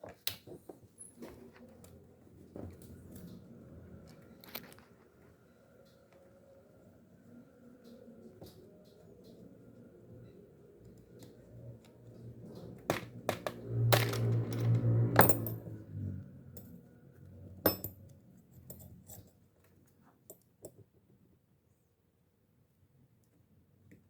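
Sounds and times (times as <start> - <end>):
small metal parts clinking: 13.9 - 15.6.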